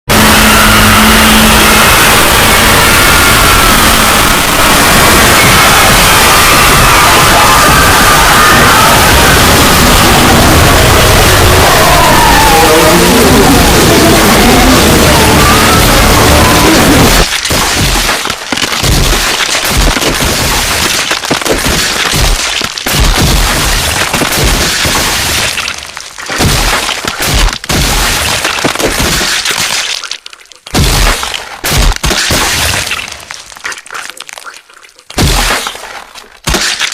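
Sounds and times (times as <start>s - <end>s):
harsh distorted noise: 0.1s - 25.6s.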